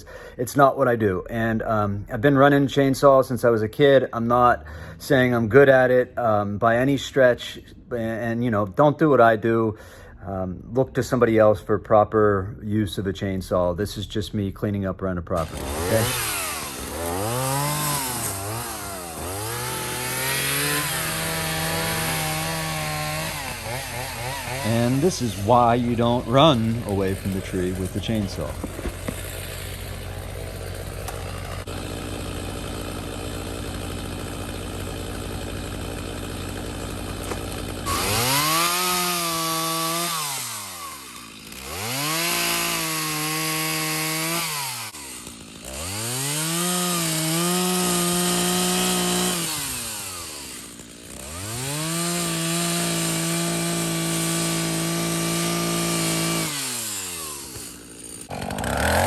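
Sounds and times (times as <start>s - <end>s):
chainsaw idling and revving: 15.4s - 59.0s.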